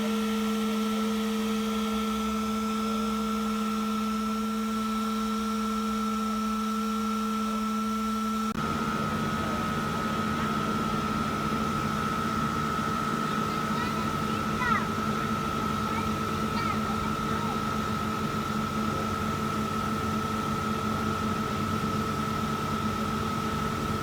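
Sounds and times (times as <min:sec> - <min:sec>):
vacuum motor humming: 0:00.0 - 0:24.0.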